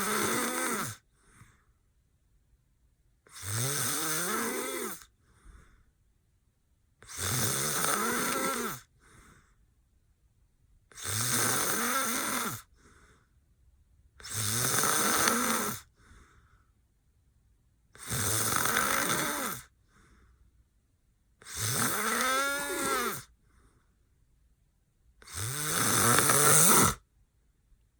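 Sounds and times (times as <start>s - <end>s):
man snoring: 0.0s - 1.0s, 3.3s - 5.1s, 7.0s - 8.9s, 10.9s - 12.7s, 14.2s - 15.9s, 18.0s - 19.7s, 21.4s - 23.3s, 25.2s - 27.0s
faint breath: 1.1s - 1.8s, 5.1s - 6.0s, 8.8s - 9.8s, 12.6s - 13.5s, 15.9s - 16.8s, 19.7s - 20.7s, 23.3s - 24.2s.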